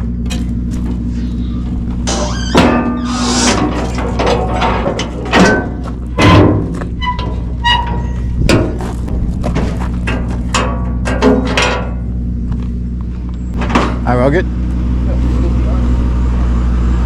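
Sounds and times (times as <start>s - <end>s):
truck engine drone: 0.0s - 17.0s
knocks and thumps: 1.7s - 12.0s.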